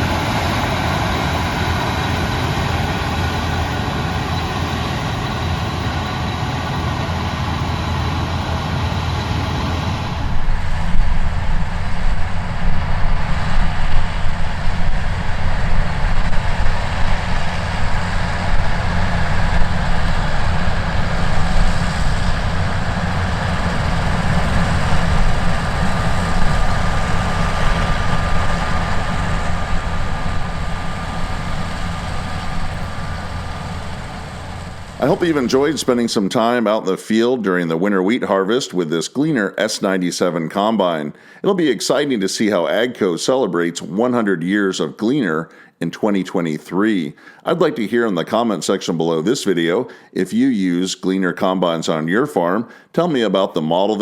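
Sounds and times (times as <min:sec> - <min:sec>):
combine harvester engine drone: 0:00.0 - 0:36.2.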